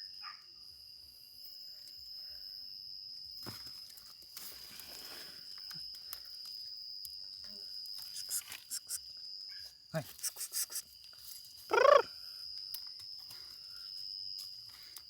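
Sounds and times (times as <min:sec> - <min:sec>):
high-pitched insect chirring: 0:05.8 - 0:12.5.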